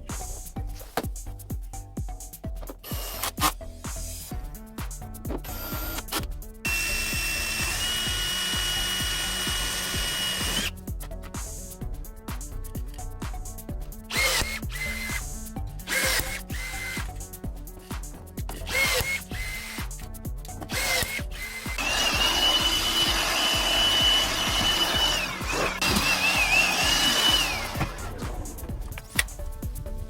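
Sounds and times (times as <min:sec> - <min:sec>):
background music: 0:00.0 - 0:30.0
electric drill whining: 0:05.4 - 0:10.7, 0:14.1 - 0:15.2, 0:15.9 - 0:17.1, 0:18.6 - 0:19.9, 0:20.6 - 0:28.1.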